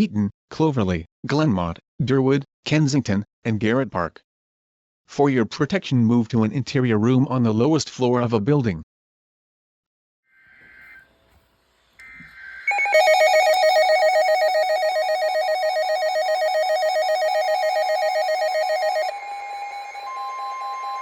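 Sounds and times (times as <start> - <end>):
steady alert tone: 12.7 - 19.1
warbling attention tone: 12.7 - 19.2.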